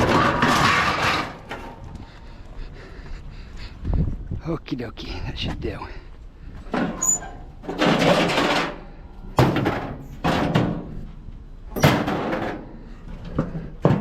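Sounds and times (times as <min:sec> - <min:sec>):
metal grill scraping: 0:00.0 - 0:01.7
metal clunks: 0:11.7 - 0:14.0.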